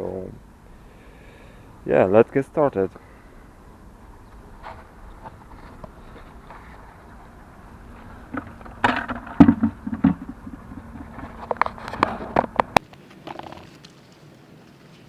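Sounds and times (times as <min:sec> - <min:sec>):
low hum: 0:00.0 - 0:13.6
hard objects knocking: 0:08.2 - 0:13.6.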